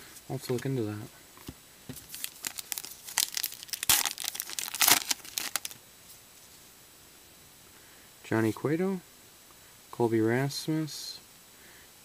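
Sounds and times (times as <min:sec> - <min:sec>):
foil wrapper crinkling: 0:01.9 - 0:05.8
foil wrapper ripping: 0:02.0 - 0:05.8.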